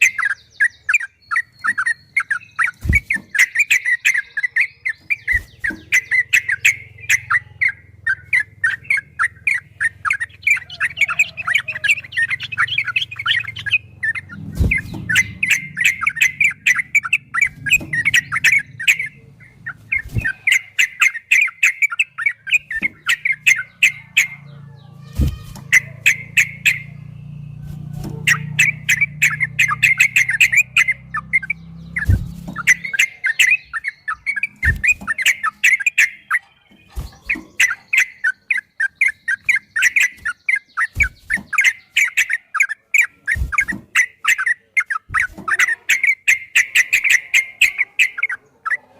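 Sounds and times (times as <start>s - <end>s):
bird chattering song: 0.0s - 48.9s
faint low hum: 4.9s - 21.1s.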